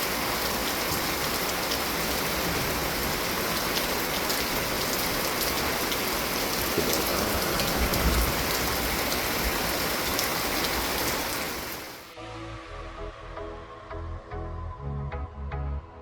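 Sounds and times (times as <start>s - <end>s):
steady rain falling: 0.0s - 12.2s.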